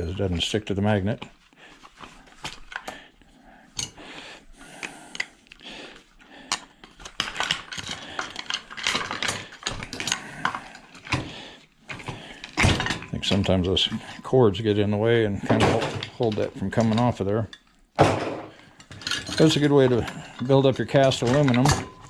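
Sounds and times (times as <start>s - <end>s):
metal and plastic parts rattling: 6.4s - 14.3s, 15.0s - 22.0s.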